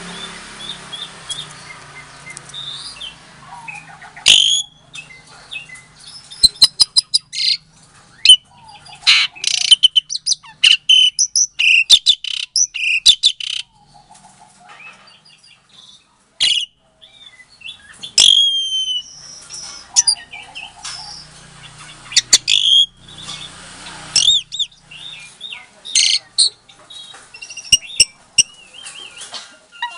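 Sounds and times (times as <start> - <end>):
starling chattering song: 0.0 - 29.9
clear bird whistle: 3.7 - 4.8, 9.1 - 13.6, 16.4 - 20.2, 22.1 - 23.5, 27.4 - 29.2.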